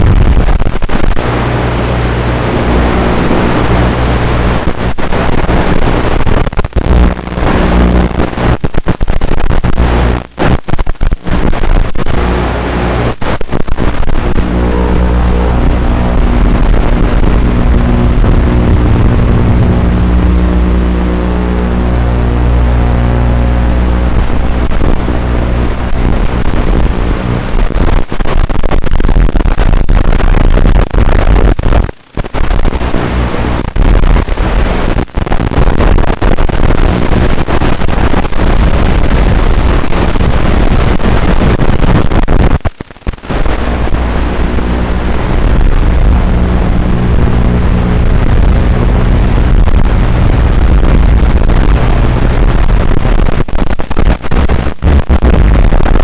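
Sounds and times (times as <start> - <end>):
drone propellers buzzing: 11.2 - 28.0.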